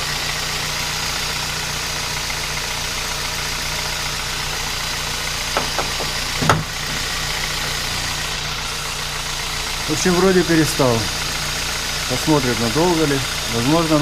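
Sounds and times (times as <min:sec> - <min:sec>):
car engine idling: 0:00.0 - 0:14.0
sharp knock: 0:05.6 - 0:07.2.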